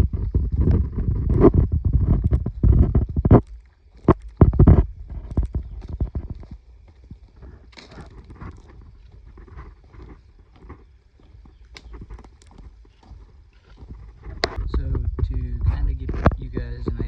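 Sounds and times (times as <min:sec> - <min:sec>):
thumps close to microphone: 0:00.0 - 0:06.5, 0:13.9 - 0:17.0
rustling of handled things: 0:00.0 - 0:17.0.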